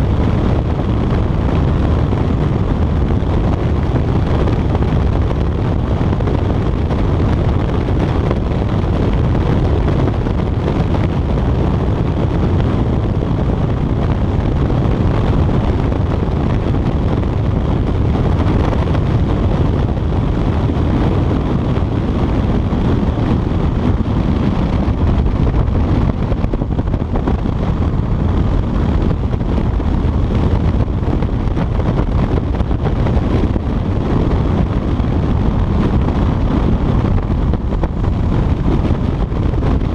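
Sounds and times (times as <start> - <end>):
wind rush: 0.0 - 39.9.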